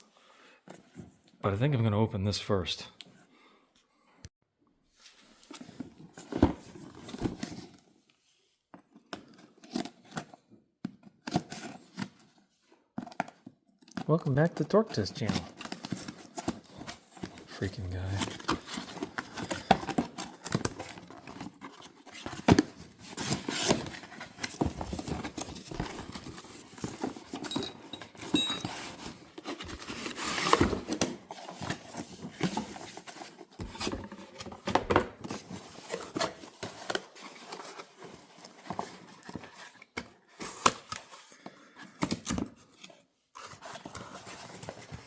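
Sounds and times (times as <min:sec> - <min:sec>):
packaging rustling: 0:14.4 - 0:45.0.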